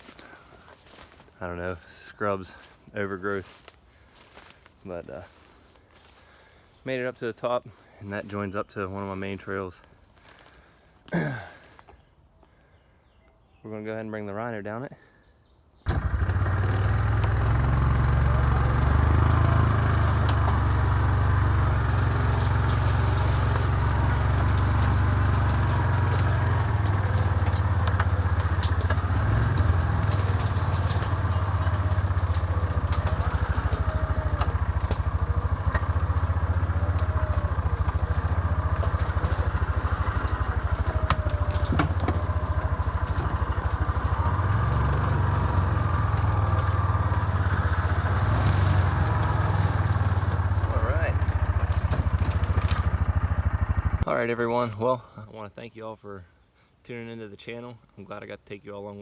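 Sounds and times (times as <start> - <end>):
utility vehicle engine running: 15.9 - 54.1.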